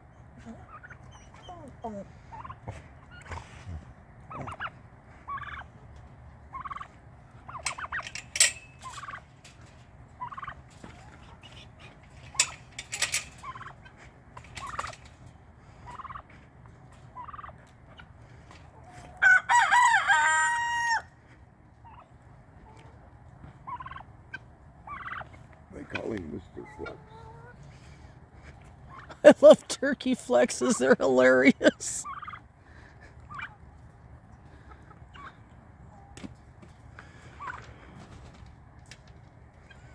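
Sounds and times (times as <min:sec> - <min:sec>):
turkeys and poultry clucking: 0:00.0 - 0:39.9
long loud poultry call: 0:17.1 - 0:22.0.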